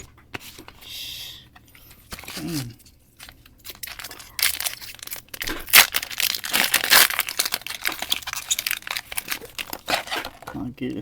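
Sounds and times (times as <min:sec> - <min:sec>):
foil wrapper crinkling and tearing: 0:02.2 - 0:10.6.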